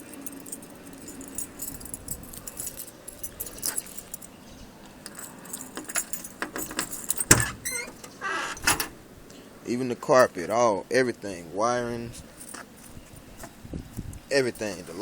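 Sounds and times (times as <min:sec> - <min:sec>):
keys jangling: 0:00.0 - 0:08.9, 0:12.2 - 0:13.6
key clicking in lock: 0:05.1 - 0:08.9
trunk lock clunk: 0:05.7 - 0:09.0.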